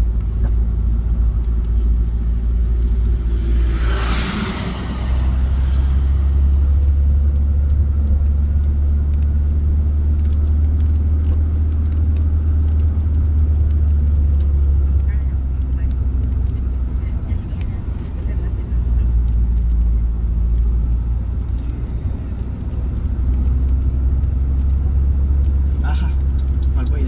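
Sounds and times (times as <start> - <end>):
vehicle rumble: 0.0 - 27.0
rushing whoosh: 1.9 - 7.9.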